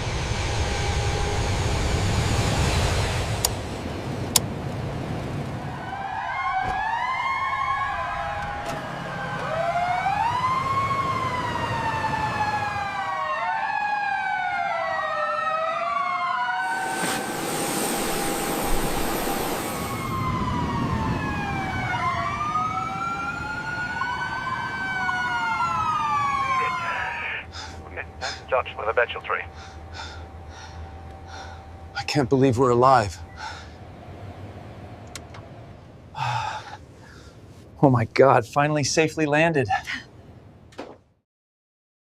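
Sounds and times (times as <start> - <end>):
emergency sirens wailing: 0.0 - 36.9
steady low rumble: 26.0 - 36.2.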